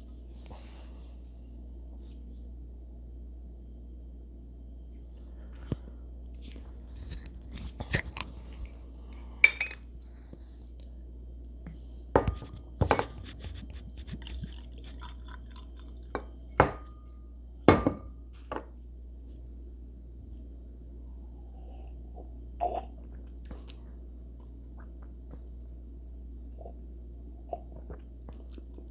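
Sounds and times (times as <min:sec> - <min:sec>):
steady low hum: 0:00.0 - 0:28.9
glass bottle clinking: 0:09.4 - 0:09.8, 0:17.7 - 0:18.1.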